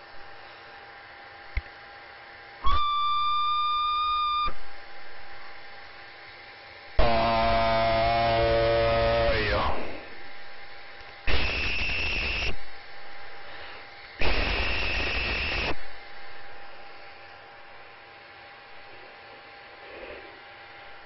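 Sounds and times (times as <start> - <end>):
buzzy radio tone bending down: 7.0 - 12.6, 14.2 - 17.8
radio hiss and hum: 7.0 - 21.0.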